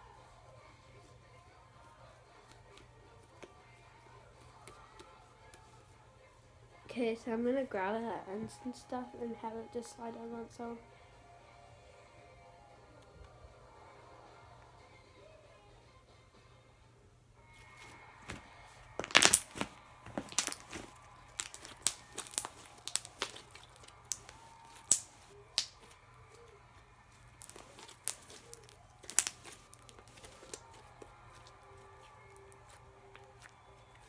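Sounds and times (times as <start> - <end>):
slime popping and crackling: 19.0 - 26.0, 27.3 - 34.0.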